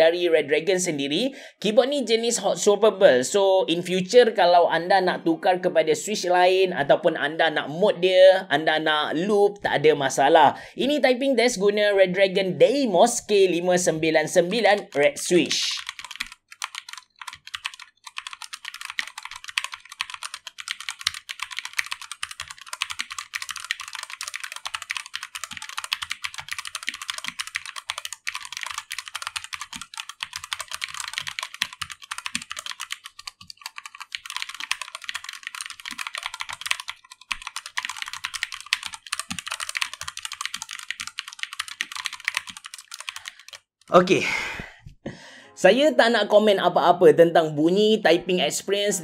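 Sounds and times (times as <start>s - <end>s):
mechanical keyboard typing: 13.8s - 43.7s.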